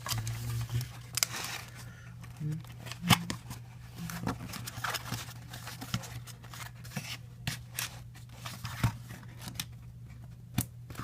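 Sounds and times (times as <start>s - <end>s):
low hum: 0.0s - 4.7s.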